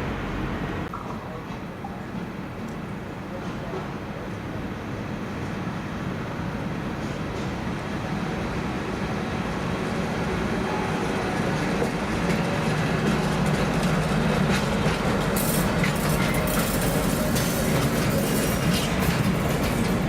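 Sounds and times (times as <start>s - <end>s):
train rolling past: 0.0s - 20.0s
wheels clicking over rail joints: 11.4s - 20.0s
high wheel squeaks: 11.8s - 20.0s.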